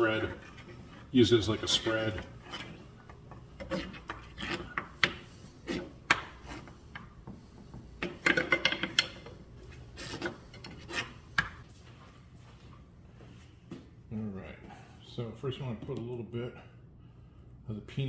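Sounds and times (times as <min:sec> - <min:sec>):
utensil scraping a pan: 0:00.0 - 0:11.6.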